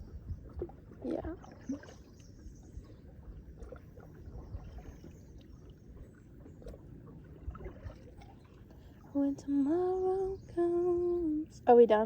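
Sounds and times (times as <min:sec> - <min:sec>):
paddle splashes: 0:00.0 - 0:09.2
low steady rumble: 0:00.0 - 0:12.0.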